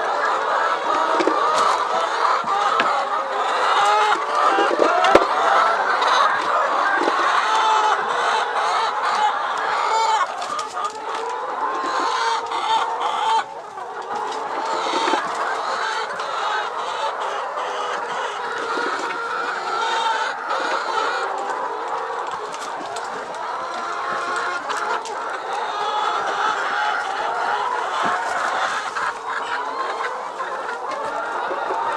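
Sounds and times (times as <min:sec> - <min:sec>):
hens clucking: 0:00.0 - 0:31.9.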